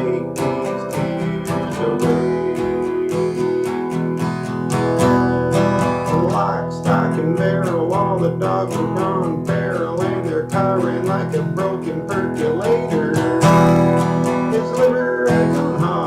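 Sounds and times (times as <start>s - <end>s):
wavering melody line: 0.0s - 5.5s, 10.9s - 16.0s
acoustic guitar strumming: 0.0s - 16.0s.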